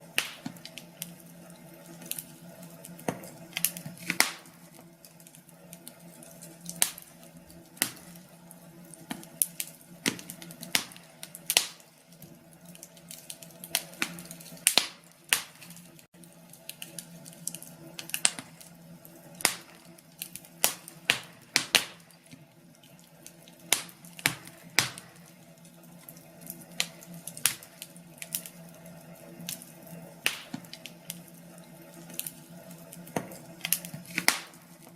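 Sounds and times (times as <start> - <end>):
wood fire crackling: 0.0 - 34.9.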